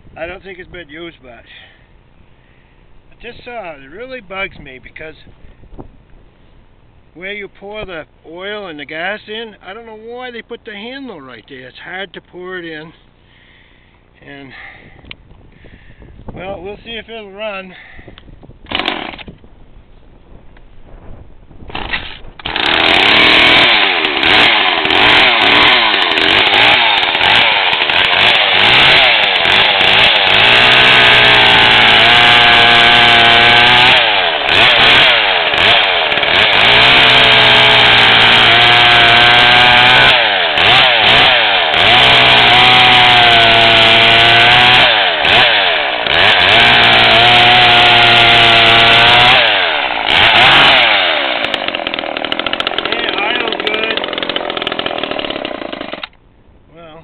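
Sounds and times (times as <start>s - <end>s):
chainsaw revving: 18.7s - 19.3s, 21.7s - 56.2s.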